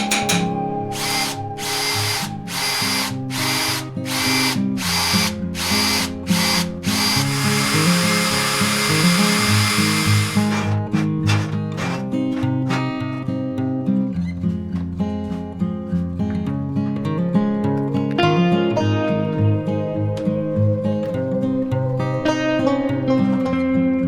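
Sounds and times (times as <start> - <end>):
acoustic guitar music: 0.0 - 24.0
small power tool motor whining: 0.9 - 13.0.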